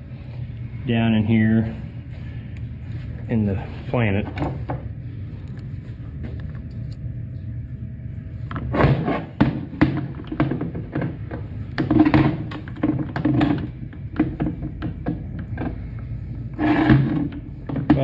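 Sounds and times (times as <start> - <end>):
heavy scraping handling noises: 8.5 - 18.0
metal parts knocking and clunking: 8.8 - 16.0, 16.6 - 18.0.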